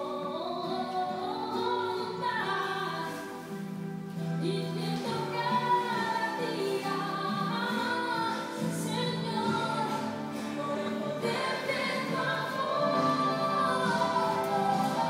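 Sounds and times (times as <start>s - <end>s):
choir singing slow melody: 5.0s - 15.0s.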